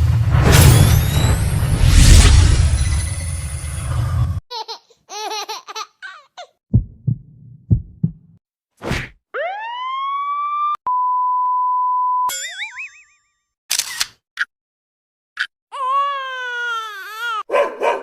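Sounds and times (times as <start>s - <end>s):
low heartbeat-like thumps: 6.7s - 8.4s
warbling cartoon tones: 9.4s - 10.8s
censor bleep: 10.9s - 12.3s.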